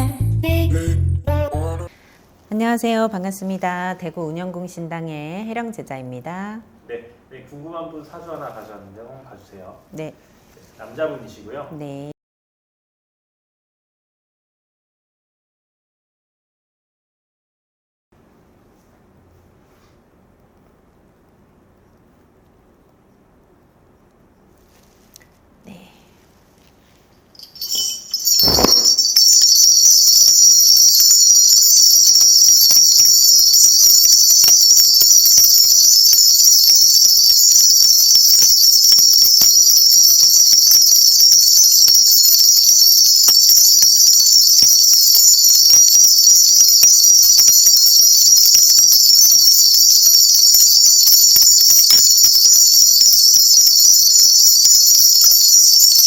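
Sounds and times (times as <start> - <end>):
bell rattle jingling: 27.3 - 56.0.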